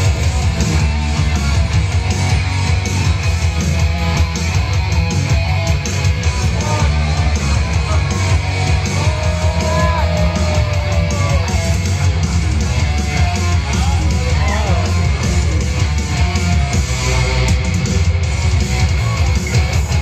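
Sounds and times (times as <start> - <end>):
guitar-driven rock music: 0.0 - 20.0.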